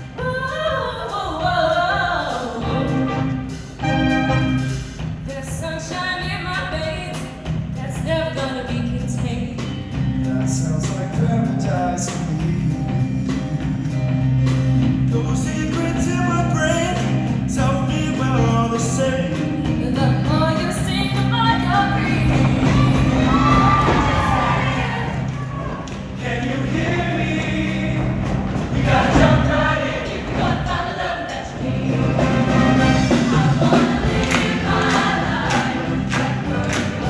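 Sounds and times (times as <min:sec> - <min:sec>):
bass line: 0:09.5 - 0:30.8, 0:31.6 - 0:37.0
drum hits: 0:20.3 - 0:37.0
choir singing: 0:21.5 - 0:37.0.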